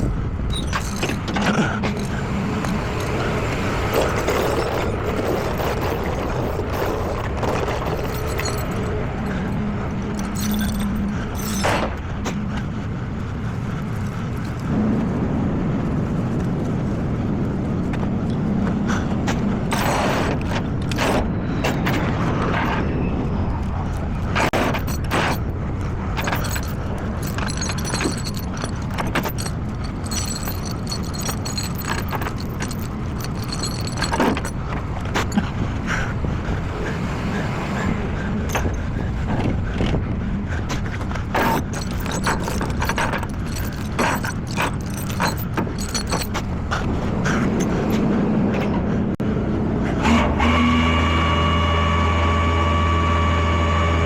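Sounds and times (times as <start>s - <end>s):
metallic clinks and scrapes: 0.0s - 12.7s, 13.4s - 15.1s, 19.3s - 22.9s, 23.6s - 35.7s, 40.6s - 48.8s.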